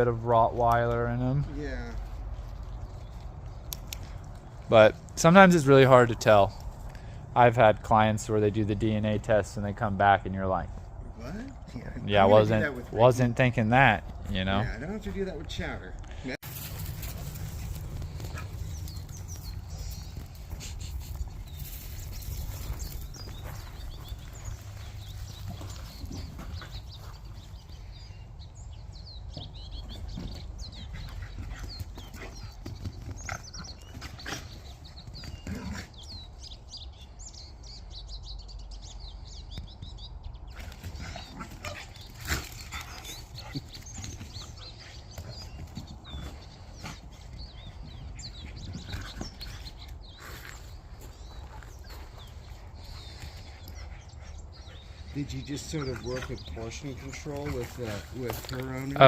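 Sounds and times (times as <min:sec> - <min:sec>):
dogs scuffing and clicking: 0:16.4 - 0:27.8, 0:29.3 - 0:35.9, 0:40.5 - 0:50.6, 0:54.6 - 0:59.0.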